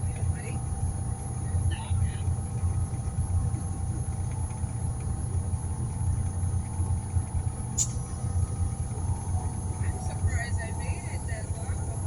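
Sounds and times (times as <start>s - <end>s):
motor pulsing rumble: 0.0s - 12.0s
sharp click: 7.8s - 8.0s.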